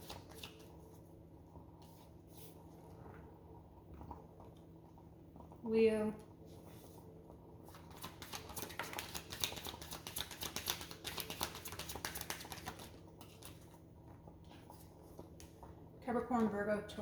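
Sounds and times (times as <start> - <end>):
cards being shuffled: 0.0 - 0.7, 7.7 - 13.7.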